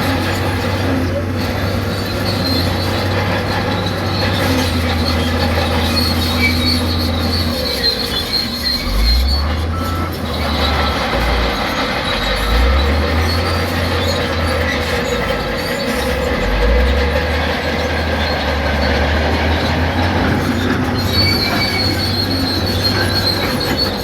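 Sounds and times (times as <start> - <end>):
bulldozer diesel engine: 0.0 - 24.0
steel tracks squealing: 0.0 - 24.0.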